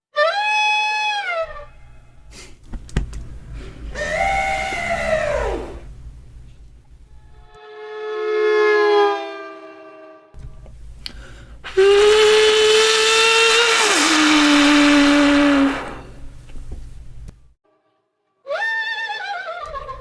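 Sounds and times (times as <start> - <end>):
beatboxer whistle-like tone: 11.7 - 16.1.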